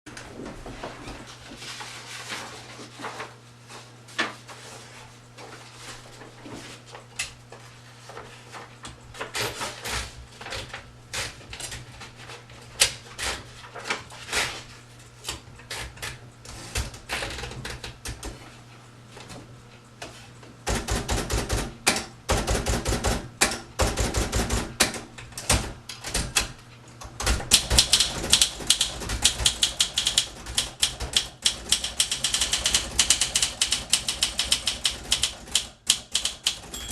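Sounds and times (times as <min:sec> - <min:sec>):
manual typewriter clacking: 0:20.7 - 0:36.9.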